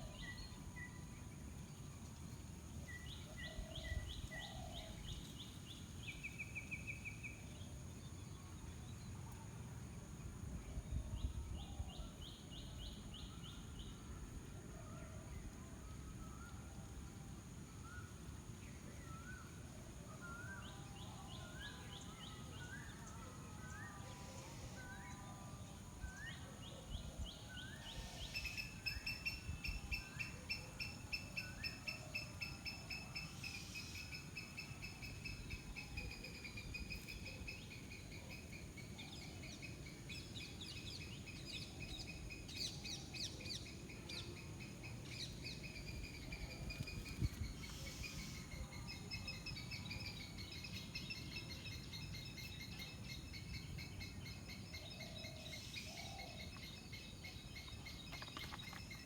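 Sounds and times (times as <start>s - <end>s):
bird chirps: 49.2s - 59.0s.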